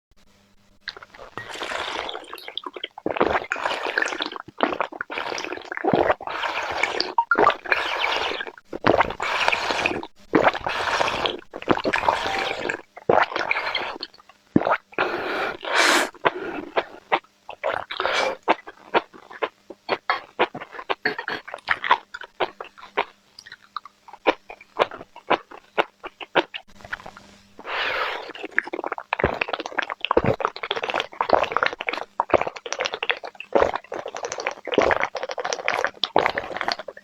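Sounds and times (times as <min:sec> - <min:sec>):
wet chewing and slurping: 0:00.8 - 0:37.0.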